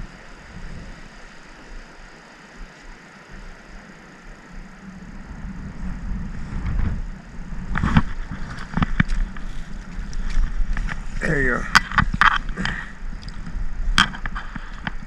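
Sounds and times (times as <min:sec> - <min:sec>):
wind buffeting microphone: 0:00.0 - 0:15.0
microphone handling clicks: 0:07.7 - 0:15.0.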